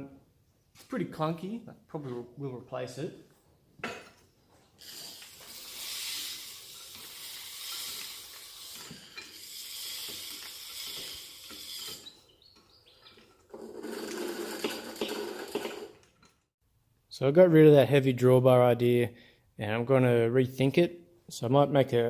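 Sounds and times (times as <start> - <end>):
grinding stone scraping: 5.1 - 16.1.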